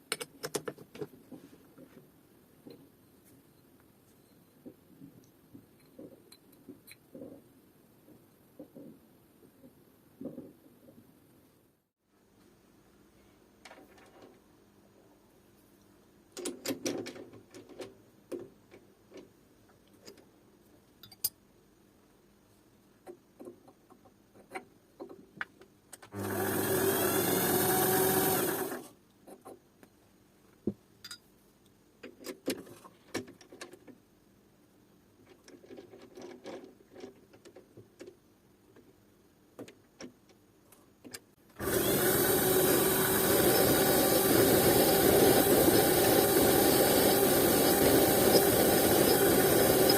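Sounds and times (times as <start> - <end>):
small power tool running: 26.2 - 28.8, 41.6 - 49.9.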